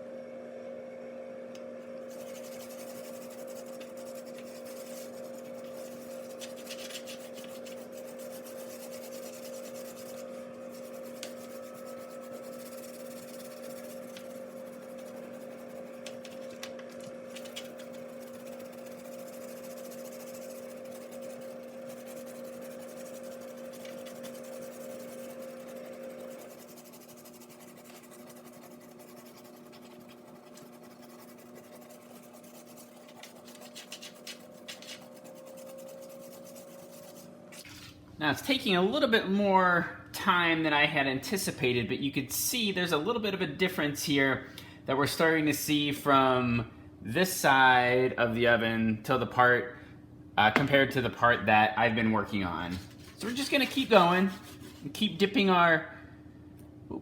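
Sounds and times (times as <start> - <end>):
steady background hum: 0.0 - 57.0
scratchy scrubbing on glass: 2.0 - 16.6, 17.3 - 37.3, 52.7 - 54.9.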